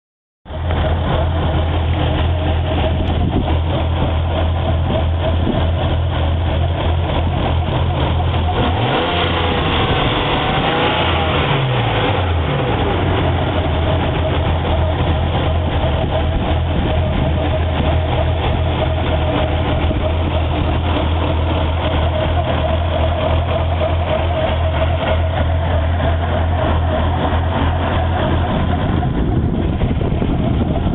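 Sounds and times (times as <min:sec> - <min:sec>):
car engine idling with a misfire: 0:00.5 - 0:30.9.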